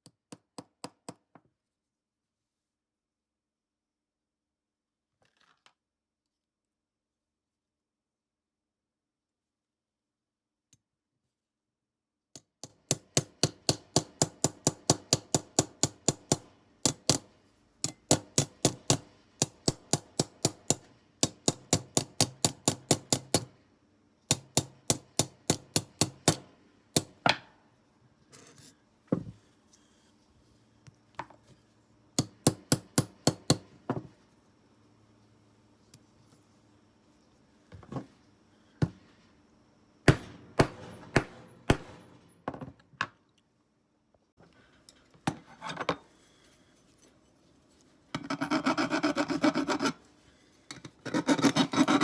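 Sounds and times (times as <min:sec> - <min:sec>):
small hammer tapping on metal: 0:12.4 - 0:17.2, 0:17.8 - 0:23.5.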